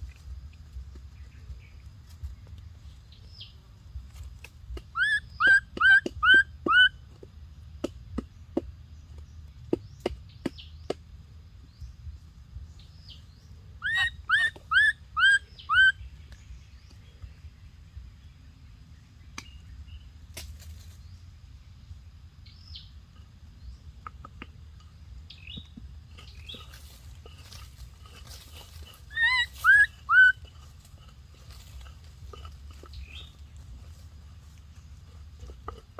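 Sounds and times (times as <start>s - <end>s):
short chirping animal calls: 13.8s - 16.0s, 29.0s - 30.4s.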